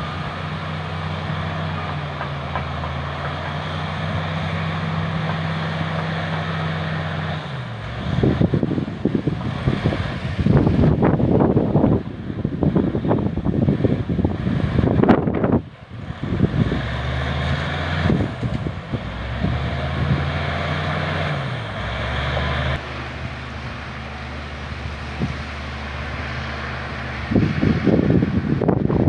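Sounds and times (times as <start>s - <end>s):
bulldozer diesel engine running: 0.0s - 29.0s
wind buffeting microphone: 7.6s - 29.0s.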